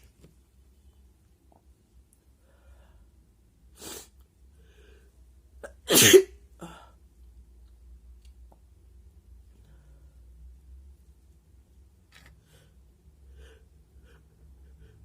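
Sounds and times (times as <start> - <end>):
man sneezing: 5.9 - 6.8.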